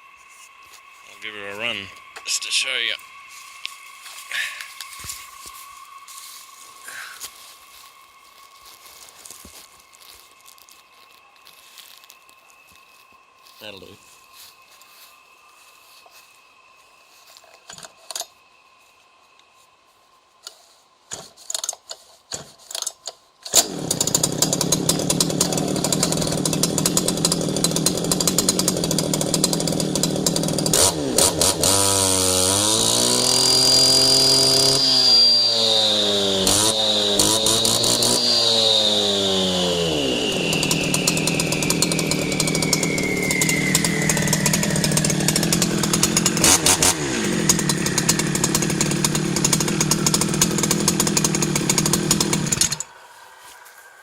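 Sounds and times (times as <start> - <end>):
cut-off saw engine running: 23.5 - 53.3.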